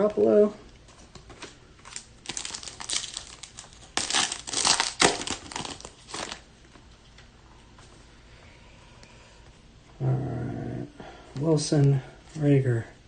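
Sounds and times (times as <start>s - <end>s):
foil wrapper crinkling and tearing: 1.4s - 6.5s.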